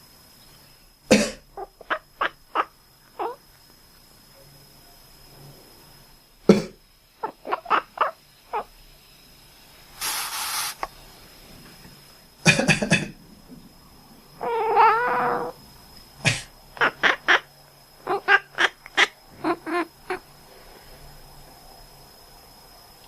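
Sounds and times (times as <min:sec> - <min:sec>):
breathy hiss: 0:05.1 - 0:13.5, 0:14.2 - 0:23.0
cat meowing: 0:14.4 - 0:15.6
short sharp coughs: 0:16.3 - 0:16.5.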